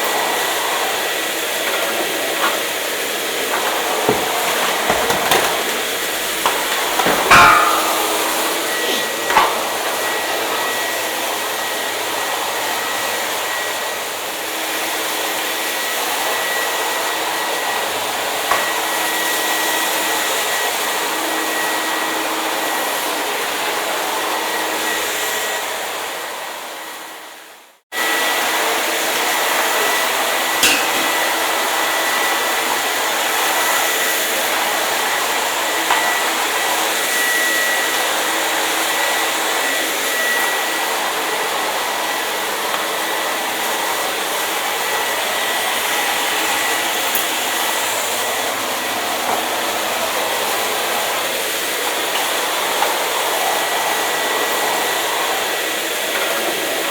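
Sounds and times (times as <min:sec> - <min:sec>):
hair dryer blowing: 0:00.0 - 0:56.9.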